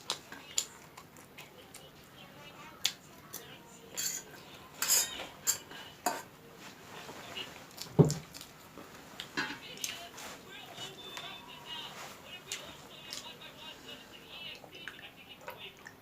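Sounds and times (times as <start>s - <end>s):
cutlery scraping against bowl: 3.9s - 6.3s.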